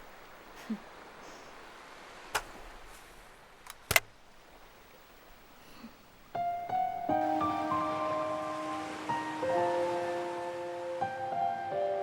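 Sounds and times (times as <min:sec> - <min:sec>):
faint background hiss: 0:00.0 - 0:12.0
sharp clicks: 0:03.6 - 0:04.1
piano music: 0:06.4 - 0:12.0.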